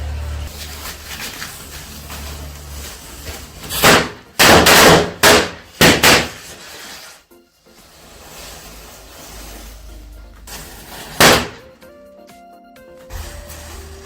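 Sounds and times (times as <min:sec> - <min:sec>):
firecracker bangs: 0:03.7 - 0:06.6, 0:11.0 - 0:11.6.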